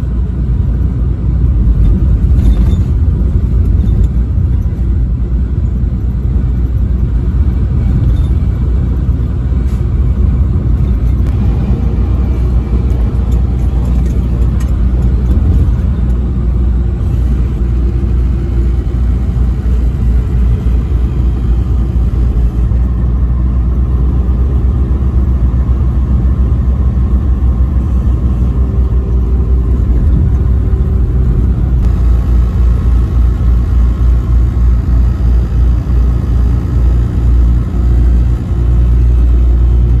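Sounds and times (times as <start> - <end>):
car driving on highway: 0.0 - 40.0.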